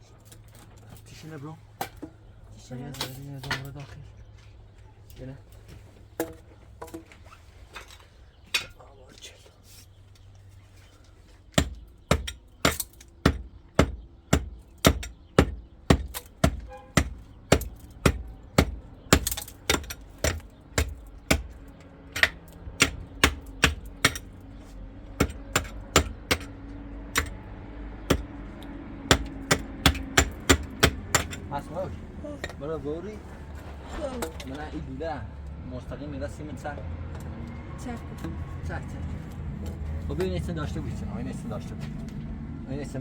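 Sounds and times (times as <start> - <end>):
hammer striking hard material: 11.6 - 21.5, 27.1 - 27.3, 29.1 - 31.4.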